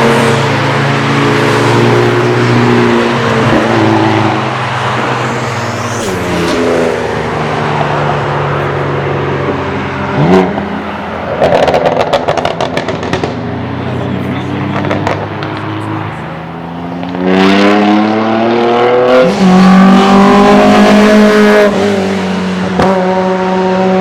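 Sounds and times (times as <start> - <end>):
racing car engines: 0.0 - 24.0
exhaust pops and crackles: 11.3 - 13.4, 14.7 - 15.8.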